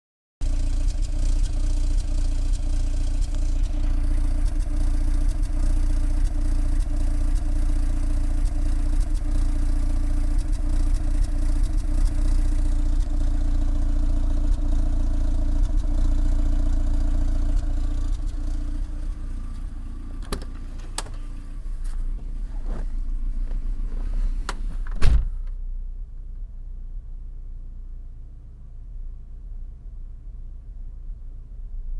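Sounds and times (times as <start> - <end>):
engine misfiring: 0.4 - 23.6
loud thump: 24.7 - 25.5.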